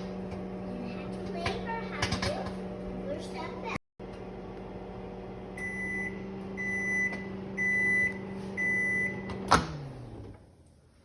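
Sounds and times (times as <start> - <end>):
microwave oven humming: 0.0 - 10.7
microwave long beeps: 5.5 - 9.4.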